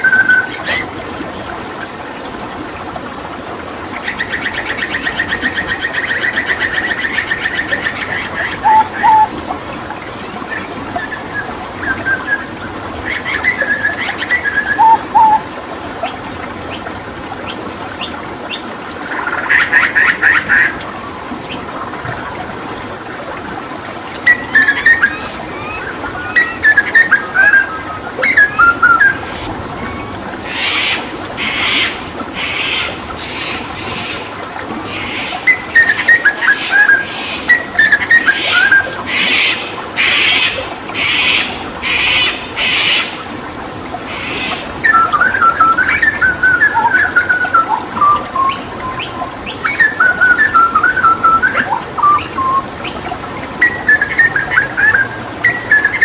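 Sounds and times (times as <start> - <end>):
running water hiss: 0.0 - 56.0
bird singing chirping phrases: 4.1 - 9.3, 10.5 - 20.7, 24.2 - 30.9, 44.2 - 53.0, 53.6 - 56.0.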